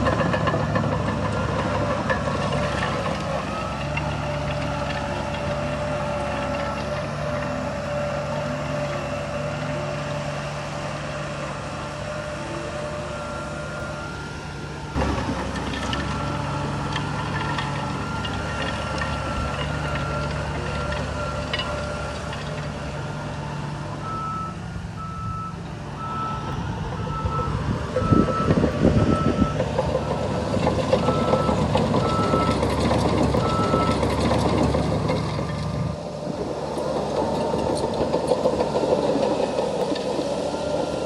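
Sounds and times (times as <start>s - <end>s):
diesel engine running: 0.0s - 41.0s
reversing alarm beeping: 11.6s - 22.7s, 23.5s - 34.7s, 39.8s - 41.0s.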